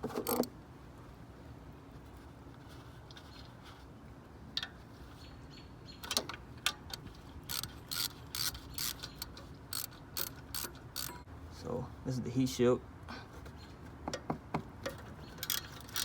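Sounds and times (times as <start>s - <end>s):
ratchet wrench clicking: 6.9s - 11.3s, 15.4s - 16.0s.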